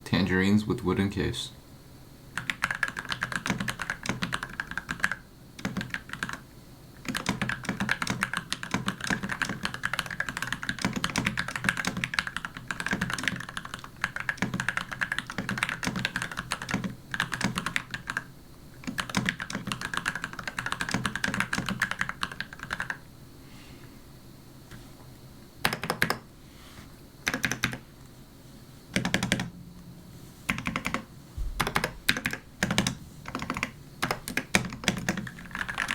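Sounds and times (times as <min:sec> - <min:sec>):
mechanical keyboard typing: 0:02.4 - 0:06.4, 0:07.0 - 0:23.0, 0:25.6 - 0:26.2, 0:27.2 - 0:27.8, 0:28.9 - 0:29.5, 0:30.5 - 0:35.9.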